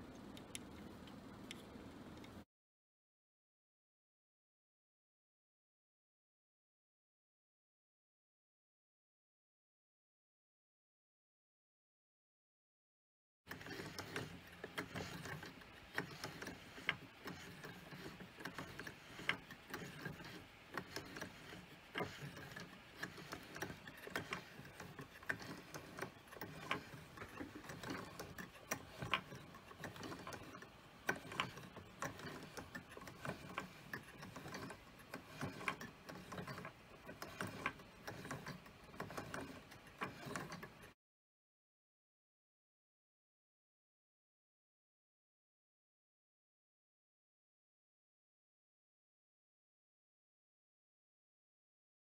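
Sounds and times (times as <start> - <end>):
mechanical gears clicking and knocking: 13.5 - 40.9.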